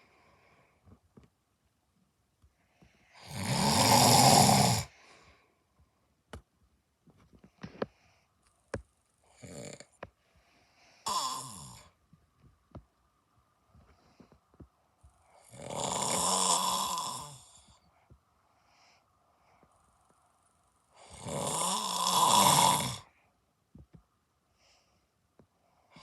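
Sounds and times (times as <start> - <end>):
man snoring: 3.2 - 5.0, 9.3 - 10.0, 11.0 - 11.9, 15.4 - 17.8, 21.0 - 23.1.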